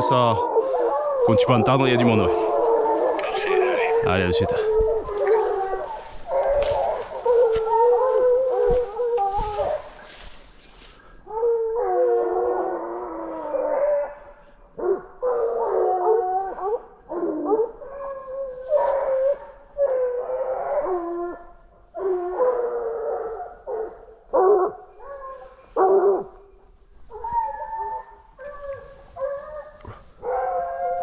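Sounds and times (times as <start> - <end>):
hounds baying: 0.0 - 14.2, 14.8 - 21.4, 27.1 - 31.0.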